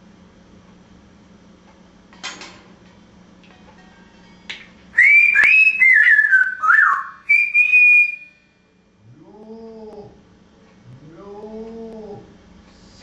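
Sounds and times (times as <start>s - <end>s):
parrot whistling: 5.0s - 8.4s.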